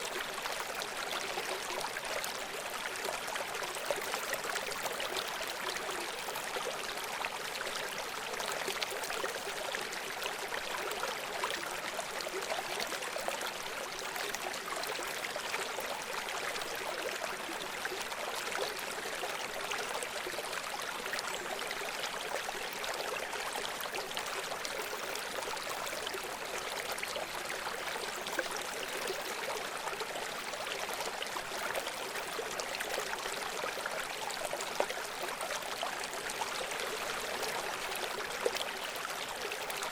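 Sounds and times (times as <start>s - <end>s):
stream running over rocks: 0.0s - 39.9s.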